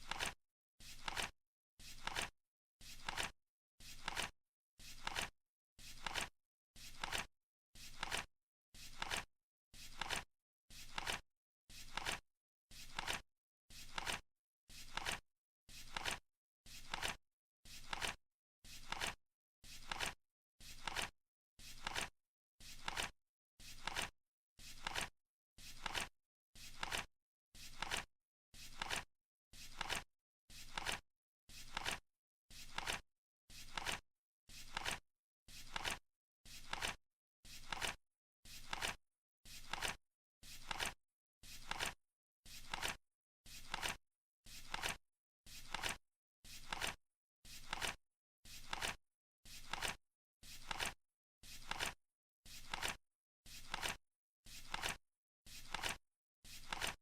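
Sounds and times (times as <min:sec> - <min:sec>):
flip-clock card clacking: 0:34.7 - 0:35.0, 0:43.7 - 0:43.9, 0:53.7 - 0:53.9.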